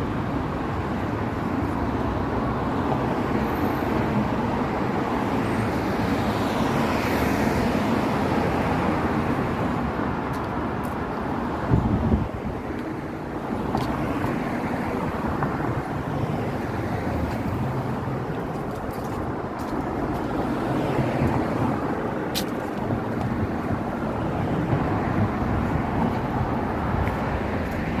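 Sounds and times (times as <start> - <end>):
passing cars: 0.0 - 28.0
wind on microphone: 11.6 - 13.0.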